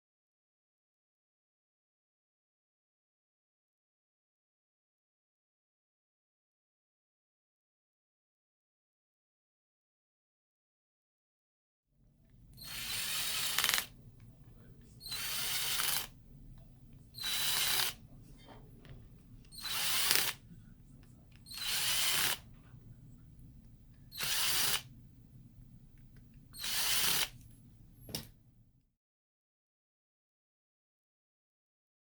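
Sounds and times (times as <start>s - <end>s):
electric screwdriver bursts: 12.6s - 14.0s, 15.0s - 16.2s, 17.2s - 18.0s, 19.5s - 20.4s, 21.5s - 22.4s, 24.1s - 24.9s, 26.6s - 27.4s.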